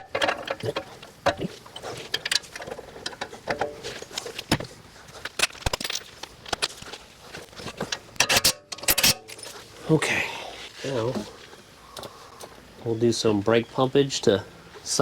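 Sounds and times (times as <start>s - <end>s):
metal tools clicking and knocking: 0.0s - 4.3s, 7.8s - 9.6s.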